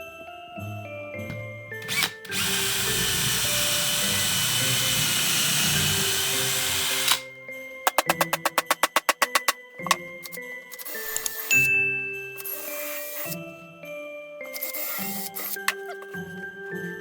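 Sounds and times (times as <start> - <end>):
light music: 0.0 - 17.0
power tool whirring: 1.8 - 7.3, 7.9 - 11.7, 12.4 - 13.4, 14.5 - 16.2
rapid sharp clicks: 7.9 - 11.6.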